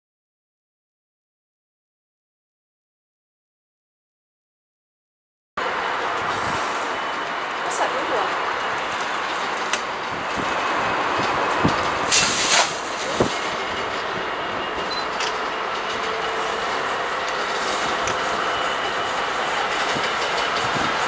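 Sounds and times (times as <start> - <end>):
train wheels on track: 5.6 - 21.0
sharp bursts and clicks: 7.1 - 21.0.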